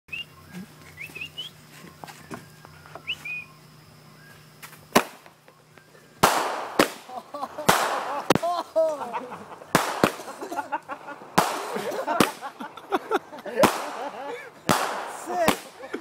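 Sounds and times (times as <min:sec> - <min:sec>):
faint high chirps: 0:00.1 - 0:04.6
firework hissing trail: 0:04.6 - 0:05.4, 0:06.2 - 0:08.5, 0:09.5 - 0:12.8, 0:13.6 - 0:16.0
fireworks bangs: 0:04.9 - 0:05.4, 0:06.2 - 0:08.7, 0:09.4 - 0:12.9, 0:13.5 - 0:16.0.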